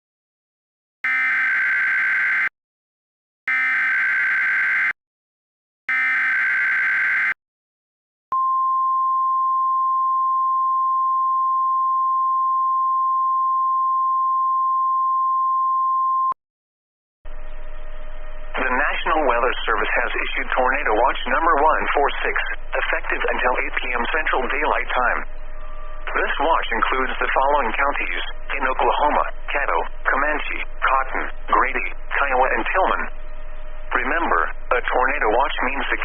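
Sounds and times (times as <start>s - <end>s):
buzzing data tones: 1.0s - 2.5s, 3.5s - 5.0s, 5.9s - 7.4s
steady alarm tone: 1.0s - 2.5s, 3.5s - 5.0s, 5.9s - 7.4s, 24.8s - 35.1s
radio hiss: 18.6s - 25.2s, 26.1s - 33.1s, 33.9s - 36.0s.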